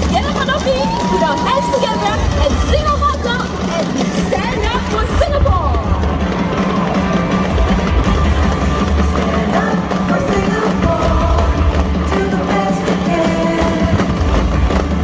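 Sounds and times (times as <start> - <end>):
loud music with heavy bass: 0.0 - 15.0.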